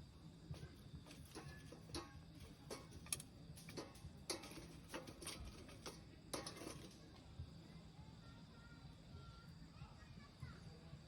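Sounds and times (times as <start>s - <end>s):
low rumble of burning fire: 0.0s - 11.0s
wood fire crackling and popping: 0.6s - 7.3s.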